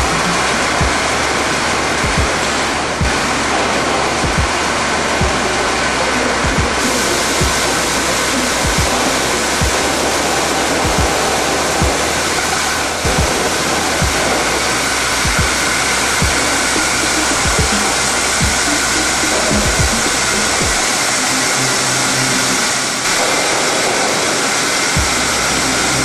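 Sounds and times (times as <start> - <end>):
lathe machining rush: 0.0 - 26.0
low thumps: 2.0 - 2.4, 6.4 - 7.7.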